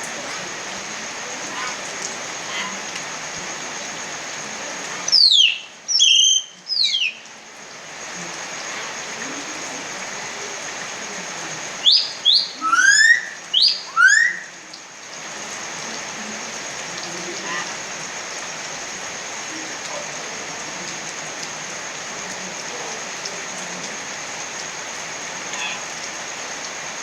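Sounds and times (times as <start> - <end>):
steady rain hissing: 0.0 - 27.0
bird whistled calls: 5.1 - 7.2, 11.8 - 14.5.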